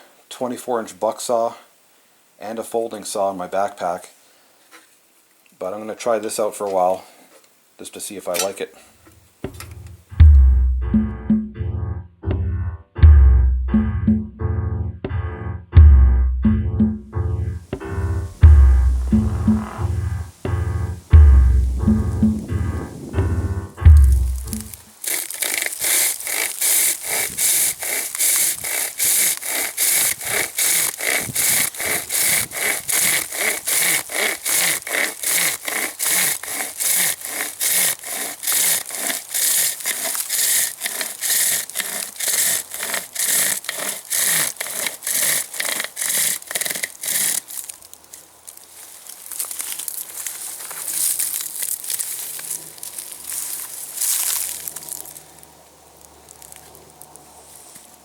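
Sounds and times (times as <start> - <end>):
chain sawing through wood: 18.2 - 58.0
quiet rustling: 24.0 - 58.0.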